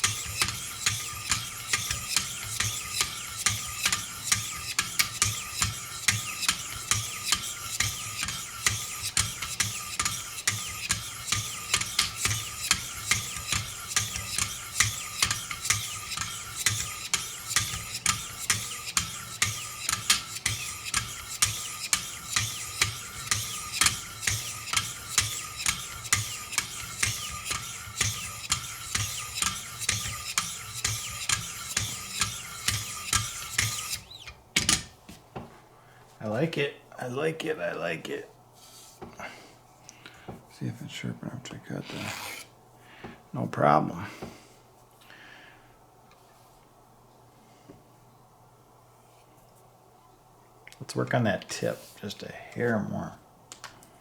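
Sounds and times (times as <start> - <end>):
sharpening stones rasping on knife: 0.0 - 34.0.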